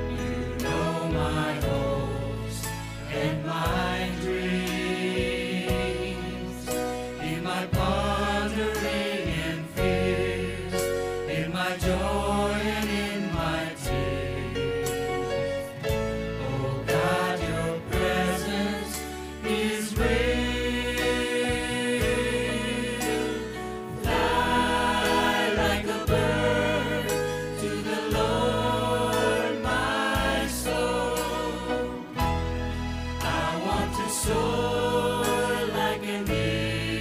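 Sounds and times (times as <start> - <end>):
gospel vocal group singing: 0.0 - 37.0
instrumental backing: 0.0 - 37.0
held bass notes: 23.6 - 37.0.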